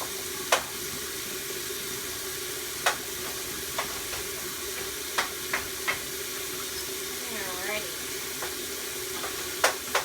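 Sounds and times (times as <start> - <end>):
water running from a tap: 0.0 - 10.0.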